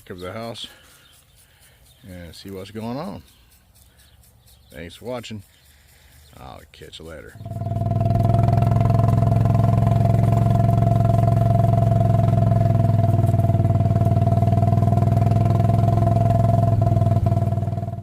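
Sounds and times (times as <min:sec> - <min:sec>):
engine running loudly: 0:07.4 - 0:18.0.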